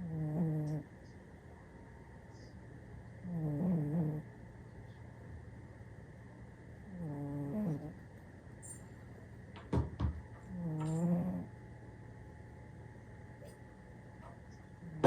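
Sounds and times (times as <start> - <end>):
cat snoring: 0.0 - 0.8, 3.2 - 4.3, 6.9 - 8.0, 10.5 - 11.5
steady low hum: 0.0 - 15.0.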